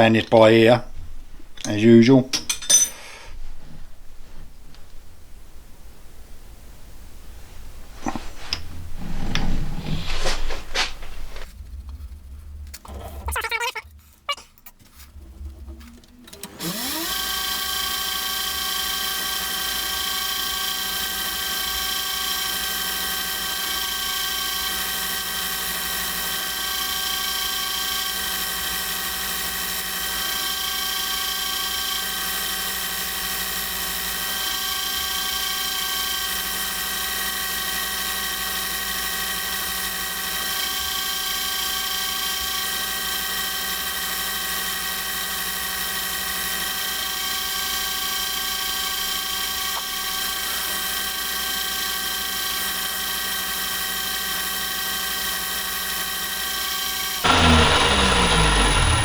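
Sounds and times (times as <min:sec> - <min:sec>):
lathe motor whine: 0:16.3 - 0:59.0.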